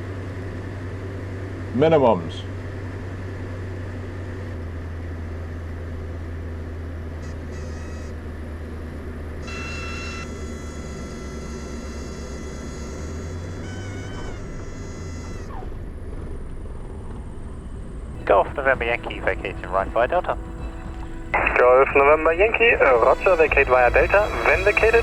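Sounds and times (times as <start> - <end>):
aircraft engine and propeller drone: 0.0 - 25.0
high steady tones: 18.2 - 25.0.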